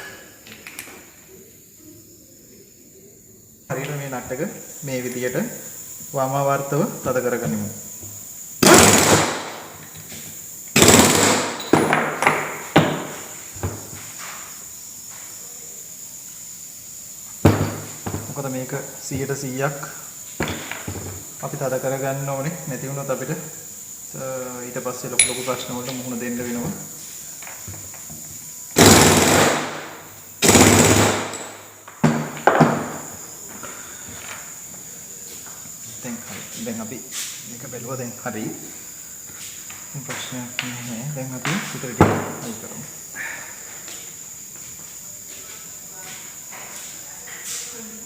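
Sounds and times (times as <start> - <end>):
loud tool bursts: 8.6 - 9.9, 10.7 - 13.3, 28.7 - 31.7
sharp knocks: 11.7 - 13.9, 17.4 - 18.4
impact wrench hammering: 25.2 - 26.0.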